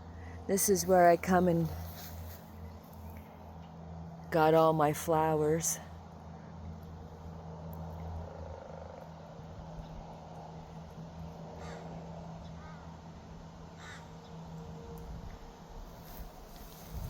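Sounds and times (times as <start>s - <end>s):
steady low hum: 0.0s - 17.0s
crow cawing: 11.6s - 12.0s, 12.6s - 12.9s, 13.8s - 14.1s.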